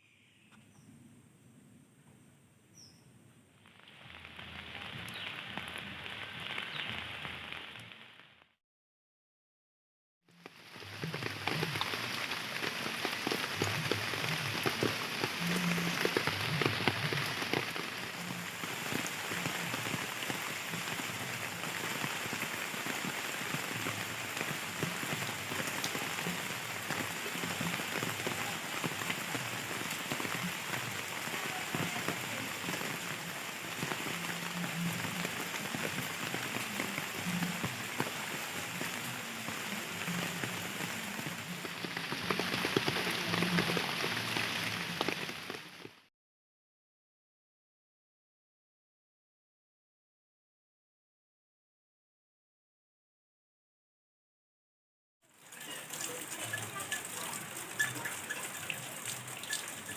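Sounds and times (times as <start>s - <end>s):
steady rain falling: 2.8s - 8.6s, 10.3s - 46.1s, 55.2s - 59.9s.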